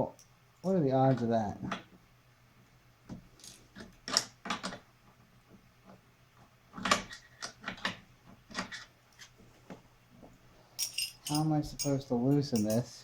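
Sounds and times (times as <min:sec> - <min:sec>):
metal hand tools clinking: 0:10.8 - 0:13.0.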